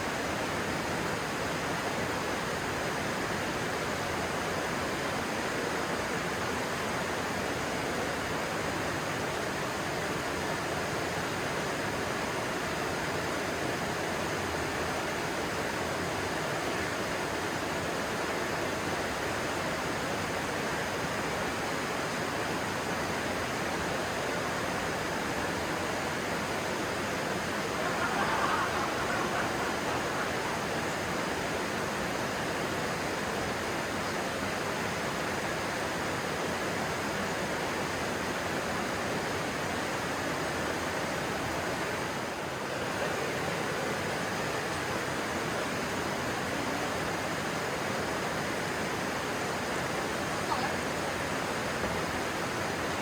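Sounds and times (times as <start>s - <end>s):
stream water rushing: 0.0s - 53.0s.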